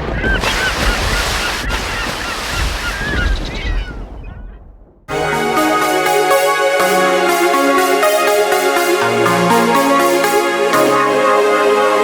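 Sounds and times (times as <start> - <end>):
birds honking: 0.0 - 4.0
music: 5.1 - 12.0.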